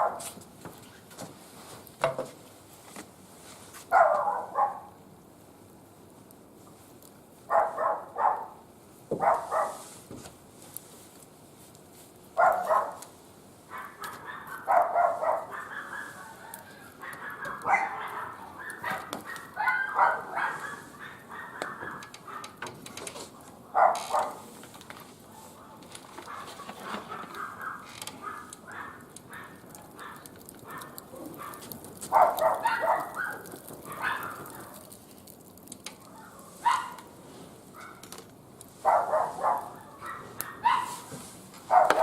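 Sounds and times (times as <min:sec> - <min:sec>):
dog barking: 0:00.0 - 0:00.3, 0:03.9 - 0:05.0, 0:07.5 - 0:08.6, 0:09.2 - 0:09.8, 0:12.4 - 0:13.0, 0:13.7 - 0:22.6, 0:23.7 - 0:24.5, 0:25.3 - 0:26.6, 0:27.2 - 0:34.9, 0:36.0 - 0:37.1, 0:37.8 - 0:38.0, 0:38.8 - 0:41.1, 0:41.7 - 0:42.0.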